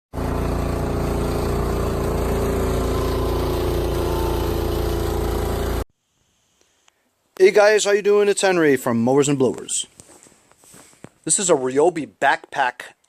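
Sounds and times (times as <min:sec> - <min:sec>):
small gas engine running: 0:00.1 - 0:05.9.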